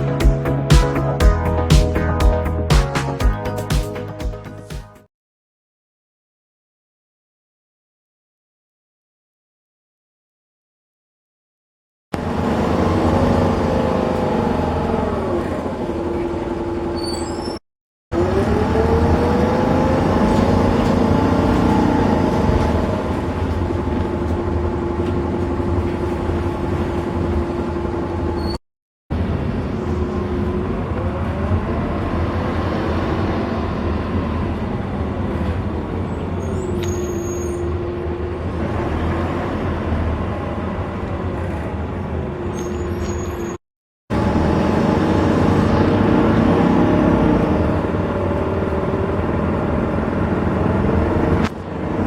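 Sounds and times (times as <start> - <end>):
bus engine drone: 12.2 - 17.5, 18.1 - 43.5, 44.1 - 52.0.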